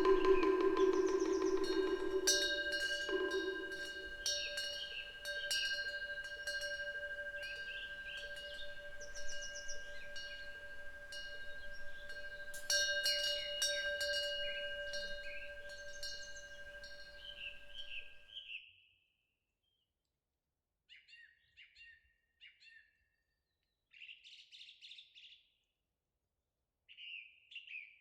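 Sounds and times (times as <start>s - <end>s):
small birds chirping: 0.0s - 18.2s
wind bell ringing: 0.0s - 18.2s.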